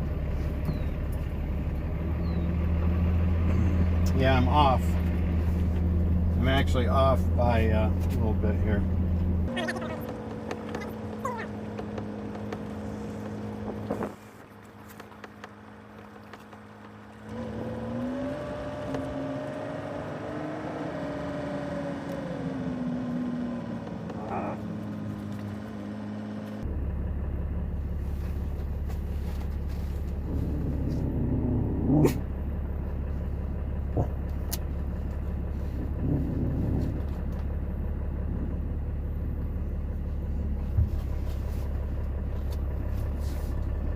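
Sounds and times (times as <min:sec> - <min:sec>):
heavy low rumble: 0:00.0 - 0:10.3, 0:26.6 - 0:43.9
engine hum: 0:00.0 - 0:43.9
road noise: 0:00.0 - 0:43.9.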